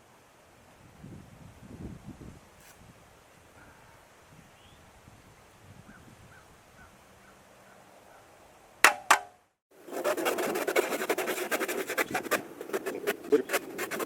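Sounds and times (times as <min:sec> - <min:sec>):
sharp knocks: 0:08.8 - 0:09.4
hand saw rasping through wood: 0:09.9 - 0:14.0.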